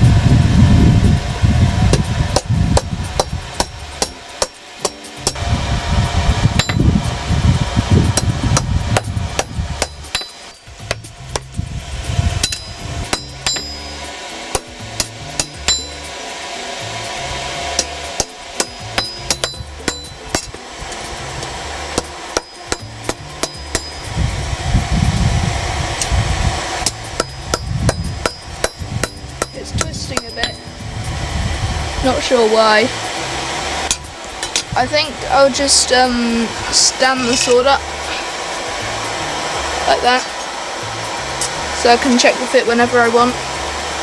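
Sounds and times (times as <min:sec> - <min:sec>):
low rumble: 0:00.0 - 0:04.2, 0:05.2 - 0:14.2, 0:16.8 - 0:42.0
hammer striking steel on anvil: 0:01.9 - 0:05.4, 0:06.6 - 0:06.9, 0:08.2 - 0:11.6, 0:12.4 - 0:16.3, 0:17.7 - 0:24.2, 0:26.8 - 0:30.8, 0:33.9 - 0:34.7.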